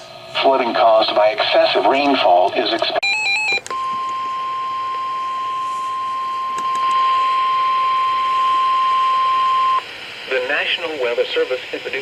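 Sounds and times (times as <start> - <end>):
radio hiss: 0.0 - 3.0, 9.4 - 12.0
steady alarm beep: 3.0 - 9.9.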